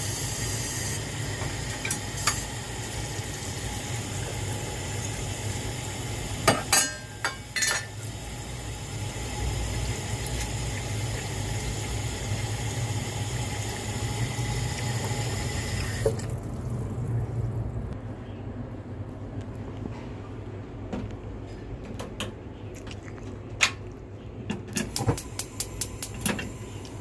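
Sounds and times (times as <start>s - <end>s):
water pouring: 7.8s - 17.6s.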